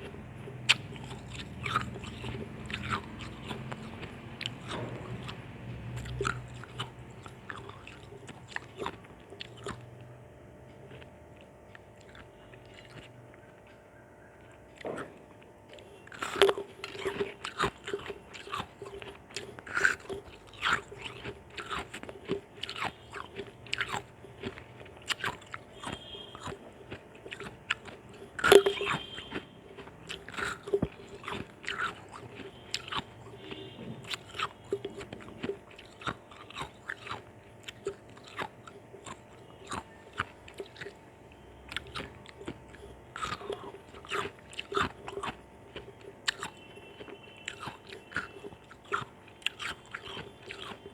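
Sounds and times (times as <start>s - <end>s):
ice being chewed: 0.0s - 50.9s.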